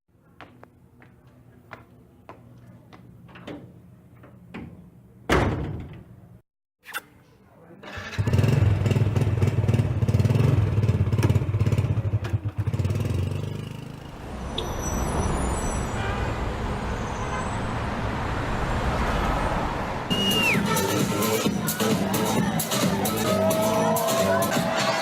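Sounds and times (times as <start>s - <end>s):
traffic and road noise: 6.1s - 25.0s
high squeal dropping in pitch: 14.2s - 16.0s, 20.1s - 20.7s.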